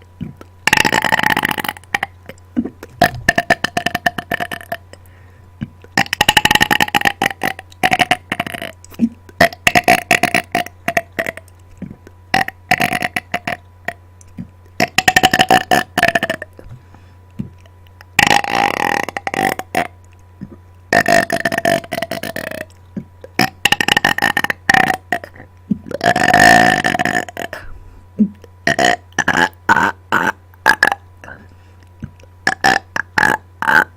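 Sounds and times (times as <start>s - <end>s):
loud drawn-out burps: 0.2s - 4.9s, 5.6s - 14.0s, 14.8s - 16.8s, 18.1s - 31.4s, 32.4s - 33.9s.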